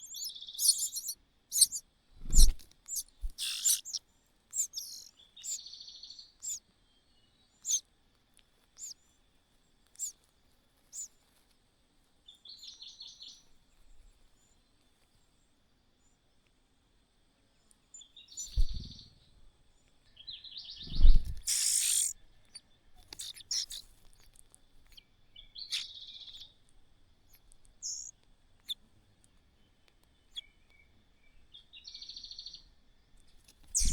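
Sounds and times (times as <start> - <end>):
buzzy bird trills: 0.0 - 5.6, 7.6 - 7.8, 10.0 - 10.2, 20.8 - 23.9, 24.9 - 26.5, 27.3 - 28.8, 33.7 - 33.9
small birds chirping: 0.0 - 11.5, 12.2 - 33.9.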